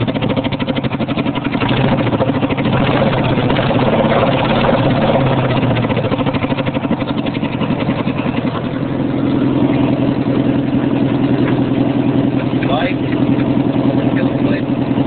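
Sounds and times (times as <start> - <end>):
lawn mower engine exhaust pulsing: 0.0 - 15.0.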